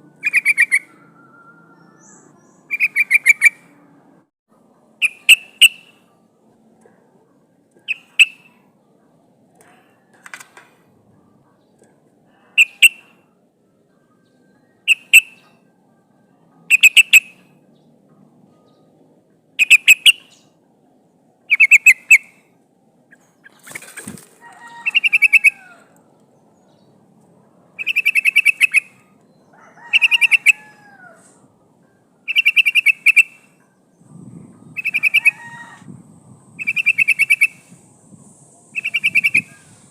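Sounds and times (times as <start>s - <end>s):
bulbul chattering calls: 0.2s - 0.9s, 1.8s - 3.6s, 21.5s - 22.3s, 27.8s - 28.9s, 32.3s - 33.4s, 34.7s - 35.5s, 36.6s - 37.7s, 38.8s - 39.8s.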